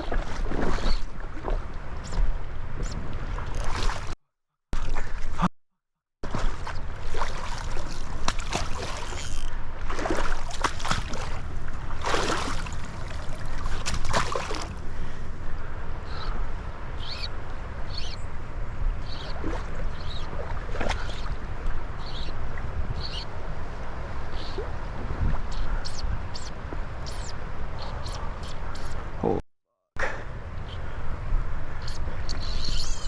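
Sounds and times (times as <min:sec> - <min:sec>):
water splashing and sloshing: 0:00.0 - 0:04.2, 0:04.8 - 0:05.5, 0:06.2 - 0:15.2, 0:19.0 - 0:29.2
wind on microphone: 0:00.0 - 0:04.2, 0:06.4 - 0:29.4
flowing water rushing: 0:06.8 - 0:14.8.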